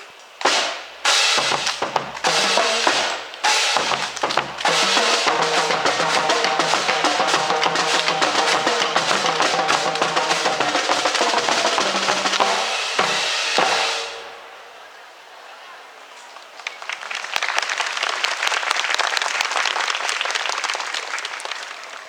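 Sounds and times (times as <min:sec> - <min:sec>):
drum-led music: 0:00.4 - 0:14.5.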